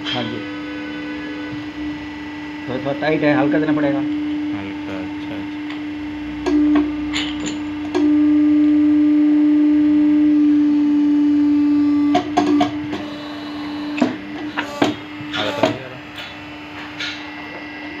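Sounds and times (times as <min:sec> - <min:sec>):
hydraulic pump humming: 0:10.7 - 0:18.0
machine clunks: 0:12.1 - 0:17.3.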